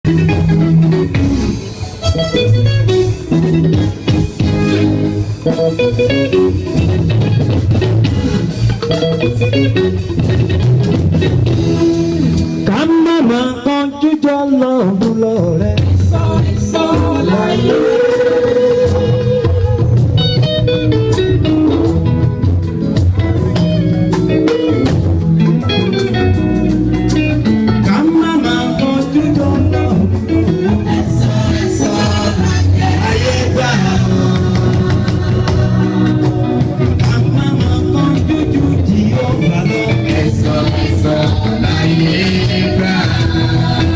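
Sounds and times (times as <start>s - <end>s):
bass guitar: 0.0s - 43.9s
drum kit: 0.0s - 43.9s
plucked guitar: 0.0s - 43.9s
drum beat: 29.8s - 43.9s.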